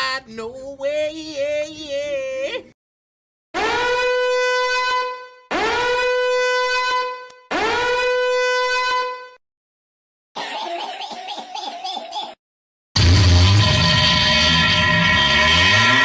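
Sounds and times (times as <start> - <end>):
horn blasts: 3.6 - 9.4, 13.0 - 16.0.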